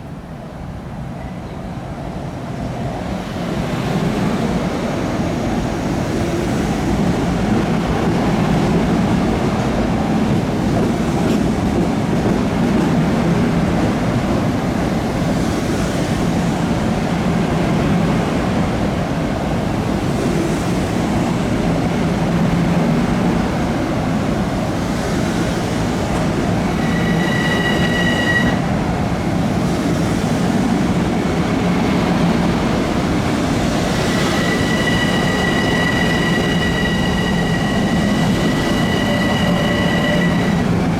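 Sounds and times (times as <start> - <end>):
train wheels rumbling on rail: 0.0 - 40.9
high wheel squeal: 25.8 - 28.6, 33.6 - 40.9.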